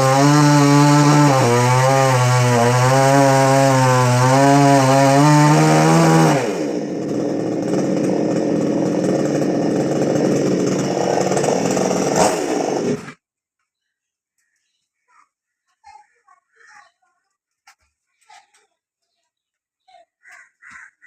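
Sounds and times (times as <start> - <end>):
chainsaw running: 0.0 - 13.2.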